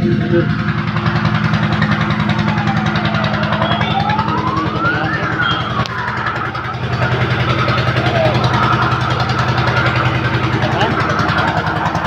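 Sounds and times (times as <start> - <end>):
engine running with fast pulse: 0.0 - 12.0
thin gliding whistling tone: 3.0 - 6.5.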